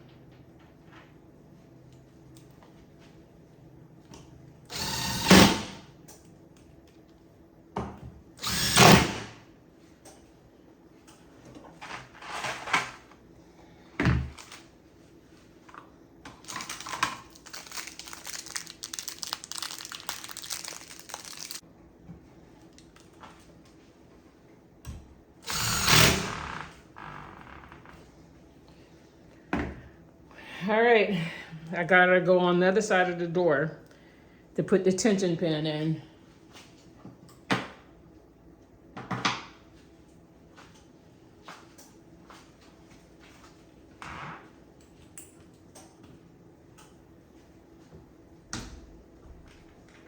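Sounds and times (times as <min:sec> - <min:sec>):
power drill driving screws: 0:04.7 - 0:05.8, 0:08.4 - 0:09.4, 0:25.4 - 0:26.8.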